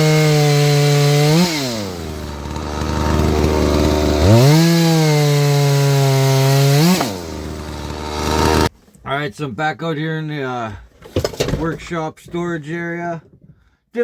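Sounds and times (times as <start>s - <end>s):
chainsaw revving and idling: 0.0s - 8.7s.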